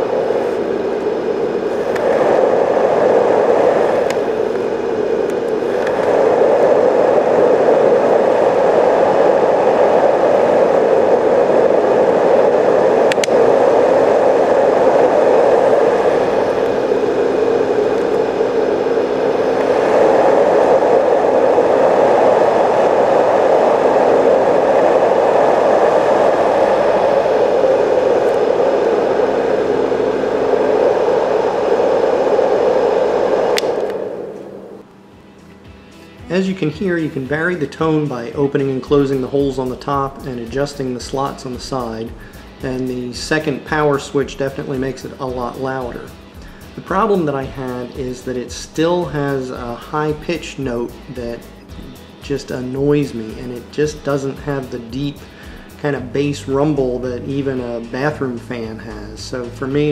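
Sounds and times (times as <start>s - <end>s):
white noise machine fan rushing: 0.0s - 59.9s
switch click: 13.1s - 13.4s.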